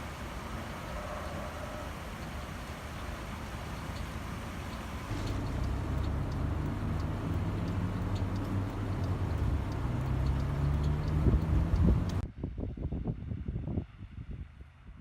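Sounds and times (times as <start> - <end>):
vehicle engine running: 0.0 - 12.2
faint light ticks: 0.9 - 12.2.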